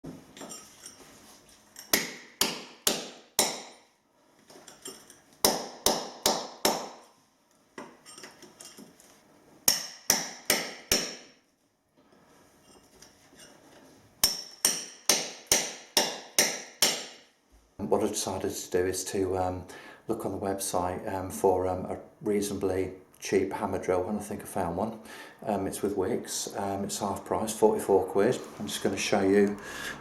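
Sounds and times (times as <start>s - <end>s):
sharp hammering strikes: 1.9s - 3.9s, 5.4s - 7.1s, 9.7s - 11.4s, 14.2s - 17.3s.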